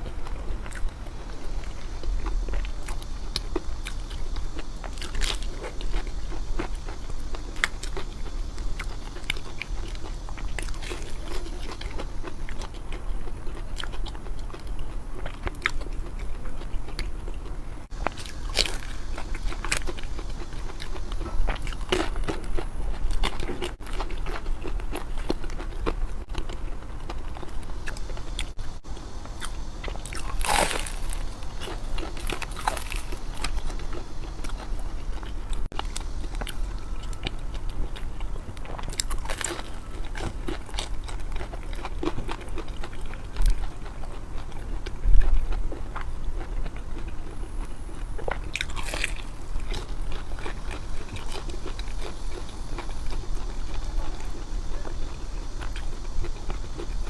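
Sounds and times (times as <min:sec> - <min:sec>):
person chewing food: 0:00.0 - 0:57.0
crisp crunches from bites: 0:29.4 - 0:53.5.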